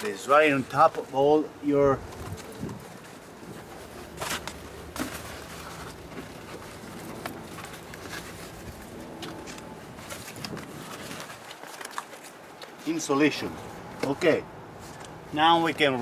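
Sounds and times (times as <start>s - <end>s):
plastic sheet clicking and rustling: 2.1s - 12.8s.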